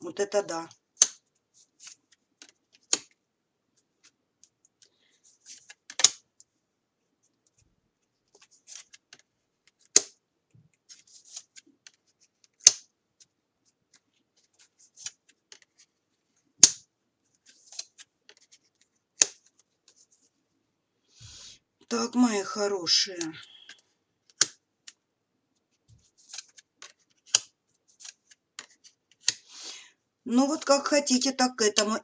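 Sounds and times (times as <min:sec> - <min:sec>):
cards rustling: 0:01.0 - 0:06.2, 0:07.3 - 0:20.3, 0:25.6 - 0:29.6
card snaps: 0:05.9 - 0:06.2, 0:12.6 - 0:12.9.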